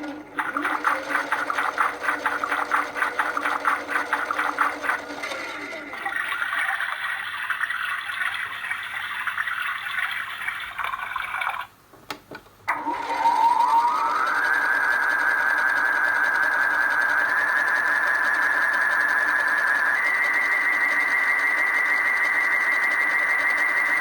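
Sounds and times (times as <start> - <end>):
washing machine rushing noise: 0.0 - 7.1
washing machine motor whine: 0.0 - 11.6, 12.7 - 24.0.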